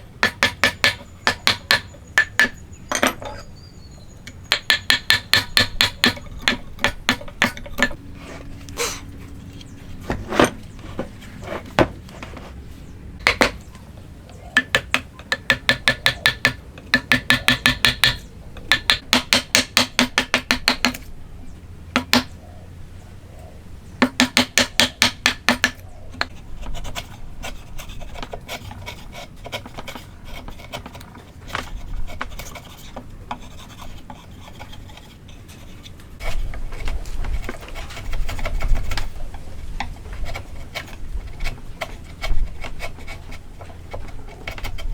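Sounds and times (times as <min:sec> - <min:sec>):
hand tool rasping on wood: 0:00.2 - 0:02.6, 0:04.5 - 0:09.0, 0:14.5 - 0:21.0, 0:24.0 - 0:44.9.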